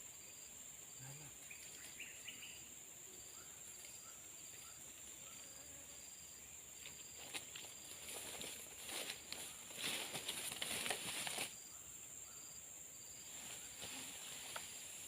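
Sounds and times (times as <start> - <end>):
insects droning: 0.0 - 15.0
clicks and rustles: 9.3 - 11.5.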